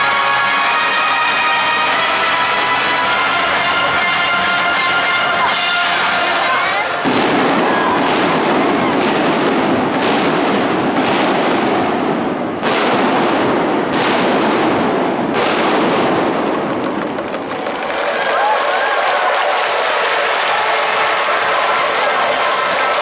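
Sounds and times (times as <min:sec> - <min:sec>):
fireworks bangs: 0:07.0 - 0:23.0.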